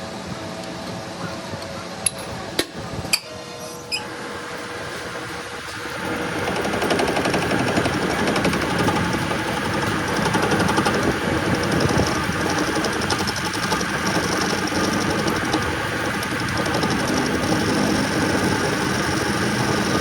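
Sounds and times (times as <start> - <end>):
metal lathe humming: 3.2 - 20.0
fast mechanical ticking: 6.0 - 20.0.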